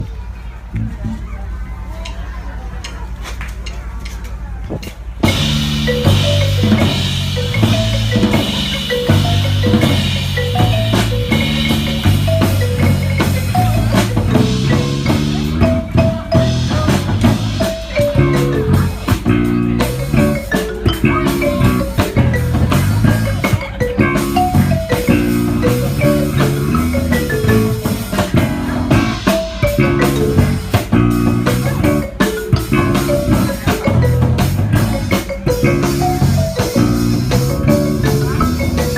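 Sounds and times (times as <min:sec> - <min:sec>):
drum kit beat: 0:04.7 - 0:38.9
marimba melody: 0:04.8 - 0:38.9
electric bass line: 0:05.2 - 0:38.9.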